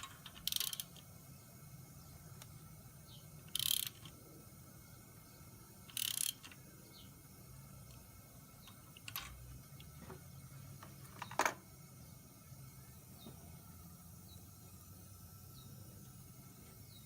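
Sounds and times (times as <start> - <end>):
metal tools clicking and tapping: 0.0 - 1.1, 5.8 - 6.7, 8.6 - 10.2
steady low hum: 0.0 - 17.0.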